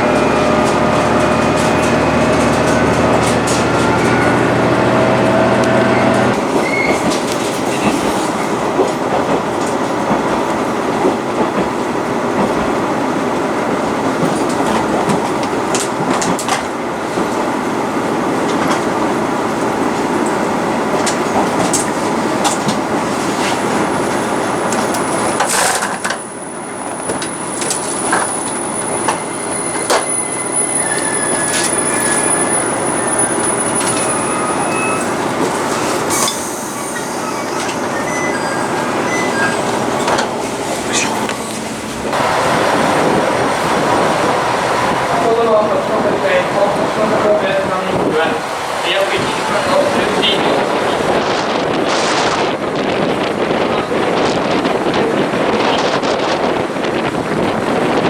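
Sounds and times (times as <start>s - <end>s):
clicks over rail joints: 0.0s - 4.6s
diesel train engine drone: 0.0s - 58.0s
train wheels rumbling on track: 0.0s - 58.0s.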